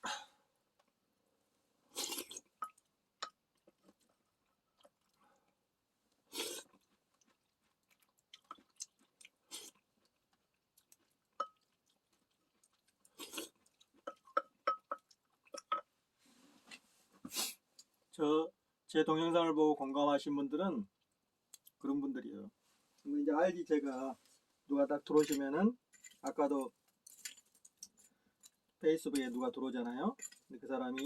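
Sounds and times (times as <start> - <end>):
person chewing food: 2.0 - 5.6, 6.2 - 15.8.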